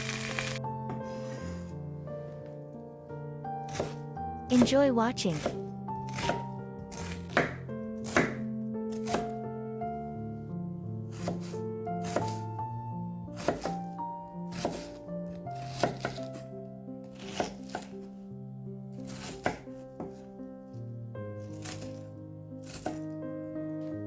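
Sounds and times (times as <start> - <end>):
background music sustained notes: 0.0 - 24.0
knife chopping on cutting board: 3.7 - 4.0, 5.3 - 9.4, 11.1 - 12.5, 13.4 - 13.8, 14.5 - 15.0, 15.6 - 16.4, 17.1 - 18.0, 19.0 - 20.3, 21.4 - 22.0, 22.6 - 23.1.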